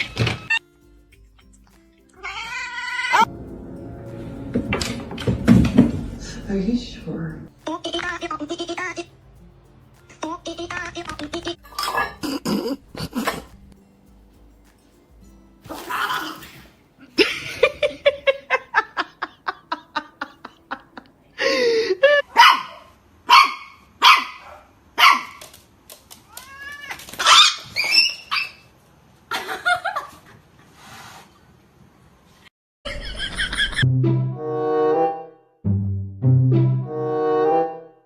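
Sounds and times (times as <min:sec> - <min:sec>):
dog barking: 0:11.8 - 0:12.3, 0:22.3 - 0:25.4.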